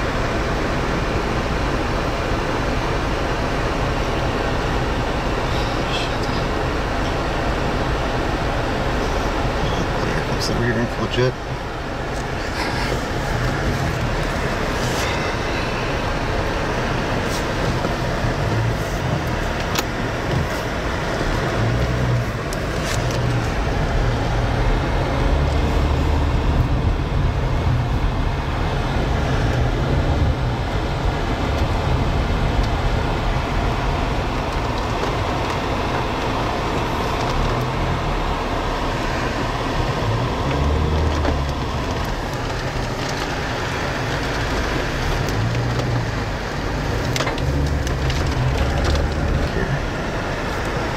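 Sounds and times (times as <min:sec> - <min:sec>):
vehicle and storm rush: 0:00.0 - 0:50.9
deep low rumbling: 0:11.4 - 0:35.0.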